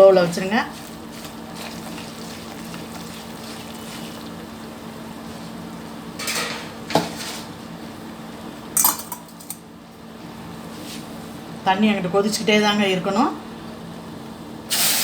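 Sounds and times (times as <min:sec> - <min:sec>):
hot water hissing in a pan: 0:00.9 - 0:05.6, 0:14.7 - 0:15.0
ladle clinking against pan: 0:08.8 - 0:09.6.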